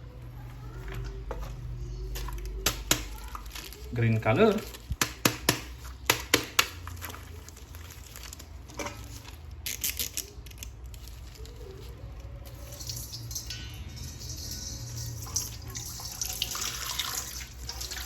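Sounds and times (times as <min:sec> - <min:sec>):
sharp plastic clicks and taps: 0:04.9 - 0:06.8.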